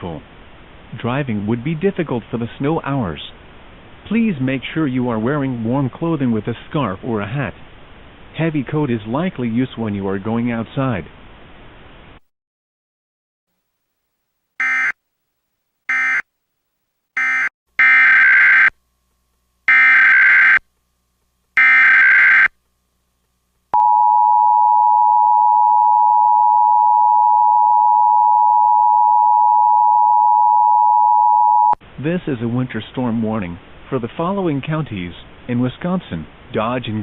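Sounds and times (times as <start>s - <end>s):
two-tone attention signal: 17.2s - 18.0s.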